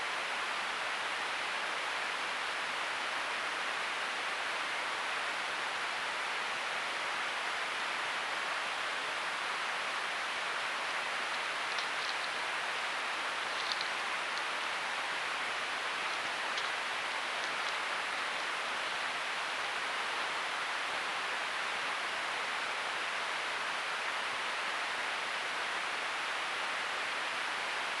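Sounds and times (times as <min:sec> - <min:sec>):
steady hiss: 0:00.0 - 0:28.0.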